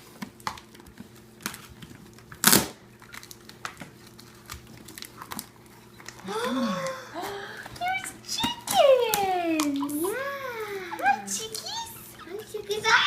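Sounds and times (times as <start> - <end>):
cardboard tearing rip: 2.4 - 2.8.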